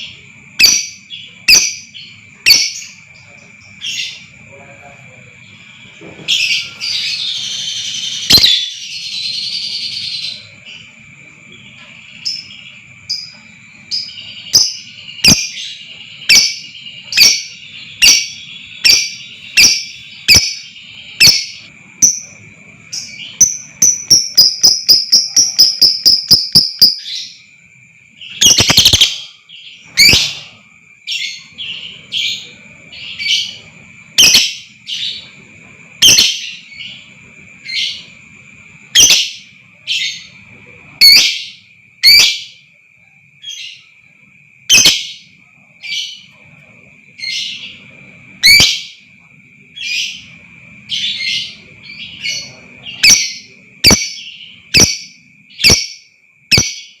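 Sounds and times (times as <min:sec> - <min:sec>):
lovebird chirping: 0:00.0 - 0:04.5, 0:05.5 - 0:42.6, 0:44.6 - 0:57.0
steady high-pitched whine: 0:00.0 - 0:57.0.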